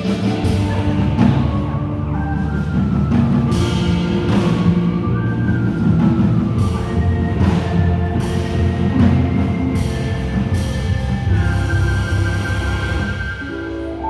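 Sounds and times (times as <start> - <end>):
held orchestral chords: 0.0 - 14.0
low rumble: 0.0 - 14.0.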